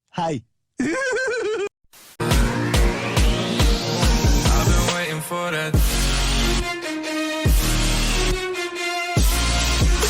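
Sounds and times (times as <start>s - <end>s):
held synth chord: 2.2s - 4.9s.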